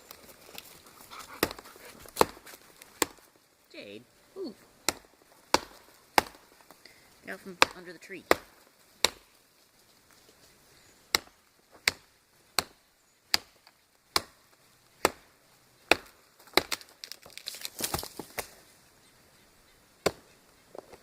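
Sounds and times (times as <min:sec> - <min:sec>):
tomahawk chopping tree trunk: 0:01.3 - 0:03.3, 0:04.8 - 0:09.4, 0:11.1 - 0:18.5, 0:20.0 - 0:21.0
tree trunk splintering and crashing: 0:15.9 - 0:18.5.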